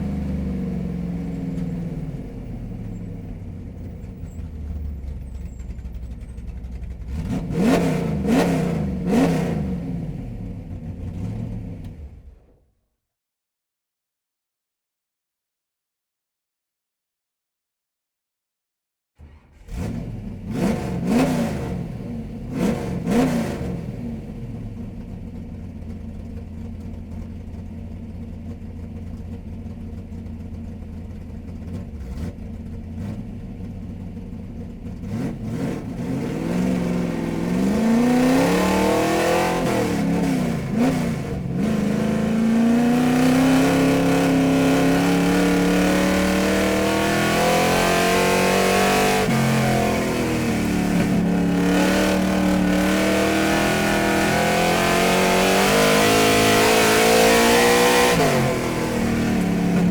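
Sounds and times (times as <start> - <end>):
car engine starting and revving: 0.0 - 12.4, 19.2 - 25.3, 31.5 - 59.9.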